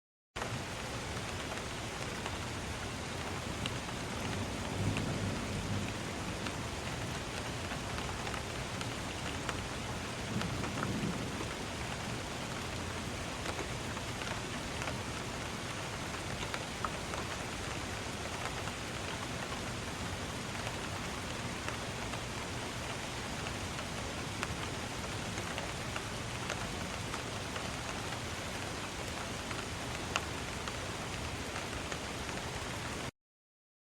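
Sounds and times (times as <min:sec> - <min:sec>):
steady rain: 0:00.4 - 0:33.1
thunder rumbling: 0:04.0 - 0:07.6, 0:10.1 - 0:13.2.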